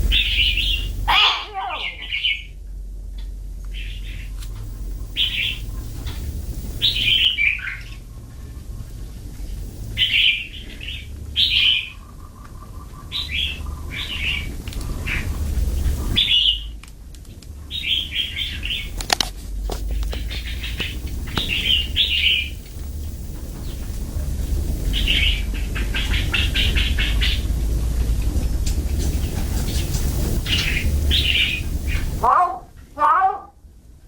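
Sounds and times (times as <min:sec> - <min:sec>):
myna harsh calls: 0:00.0 - 0:02.5, 0:19.8 - 0:23.0, 0:29.1 - 0:33.6.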